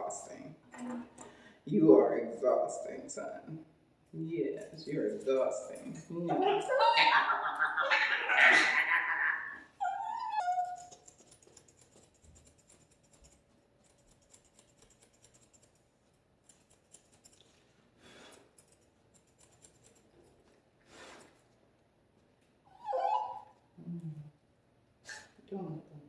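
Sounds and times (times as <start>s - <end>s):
grooming shears snipping: 4.5s - 6.8s, 10.5s - 15.8s.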